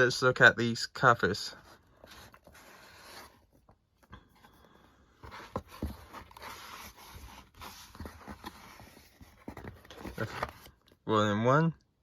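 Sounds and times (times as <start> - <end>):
paper and card rustling: 1.5 - 11.0.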